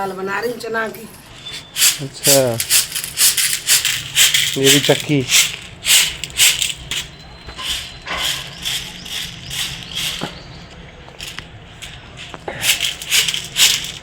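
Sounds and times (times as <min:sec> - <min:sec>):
millstone grinding: 0:01.6 - 0:10.5.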